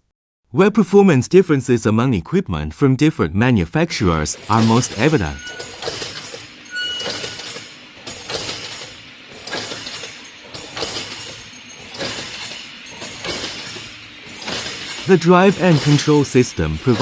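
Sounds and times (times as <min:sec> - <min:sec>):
wire mesh machine clattering: 0:04.3 - 0:17.0.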